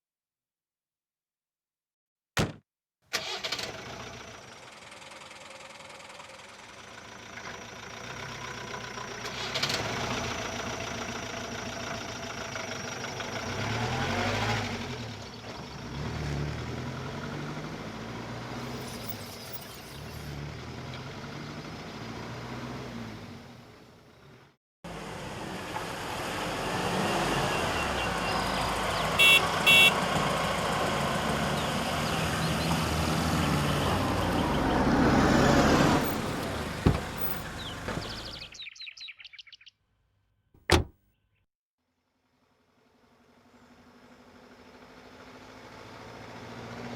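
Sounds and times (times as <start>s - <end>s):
car engine revving: 28.0s - 38.5s
car horn beeps: 29.2s - 30.0s.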